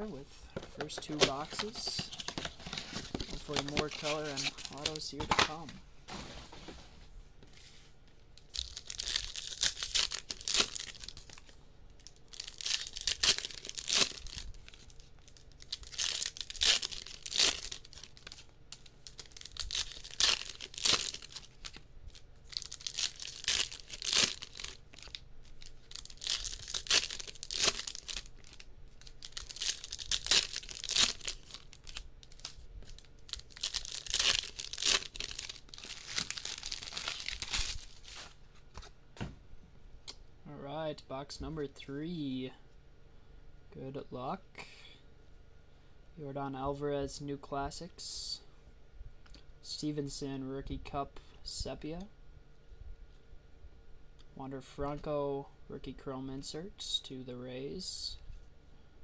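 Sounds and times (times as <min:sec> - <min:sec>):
card wrappers tearing and crinkling: 0:00.8 - 0:05.7, 0:08.4 - 0:38.9.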